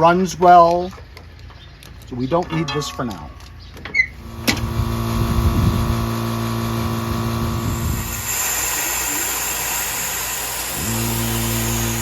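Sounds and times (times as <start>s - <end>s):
lawn tractor engine humming: 2.8s - 12.0s
hiss: 4.2s - 12.0s.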